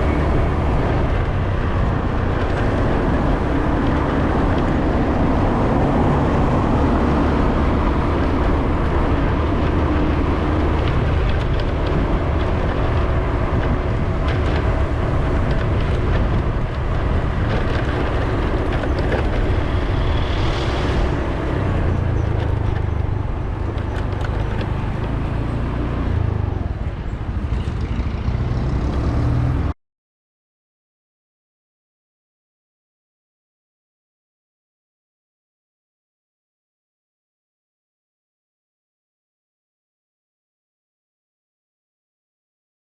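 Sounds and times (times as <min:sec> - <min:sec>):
vehicle engine rumble: 0:00.0 - 0:29.8.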